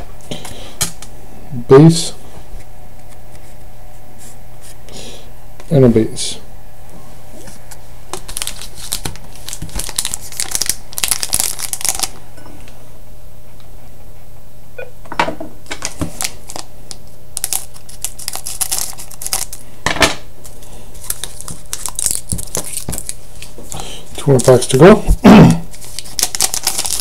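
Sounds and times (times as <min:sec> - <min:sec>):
wrapper crinkling and tearing: 0:08.1 - 0:12.2, 0:15.7 - 0:19.6, 0:21.0 - 0:27.0.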